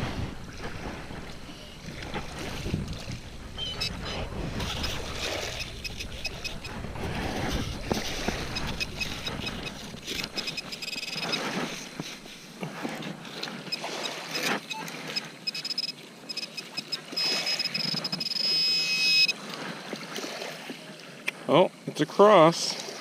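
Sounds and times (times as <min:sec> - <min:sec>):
water sloshing and splashing: 0:00.0 - 0:21.8, 0:22.6 - 0:23.0
metal detector target tones: 0:03.5 - 0:12.2, 0:14.6 - 0:19.4.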